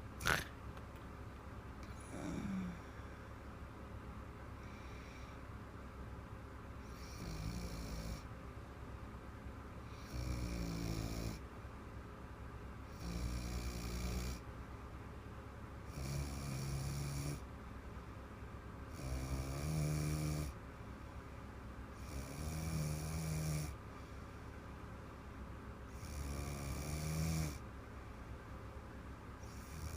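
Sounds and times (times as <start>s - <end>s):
woman snoring: 1.8s - 3.1s, 6.9s - 8.3s, 9.9s - 11.4s, 12.9s - 14.4s, 15.9s - 17.4s, 18.9s - 20.6s, 22.0s - 23.8s, 25.9s - 27.6s, 29.4s - 29.9s
quiet breathing: 1.8s - 3.6s, 4.4s - 5.8s, 20.0s - 28.6s.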